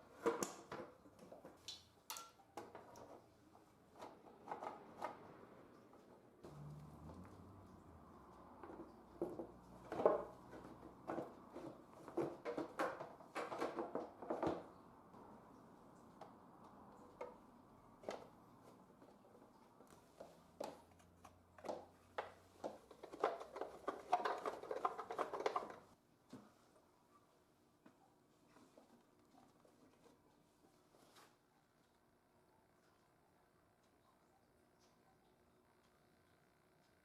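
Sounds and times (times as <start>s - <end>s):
hard objects clattering: 21.6s - 26.0s.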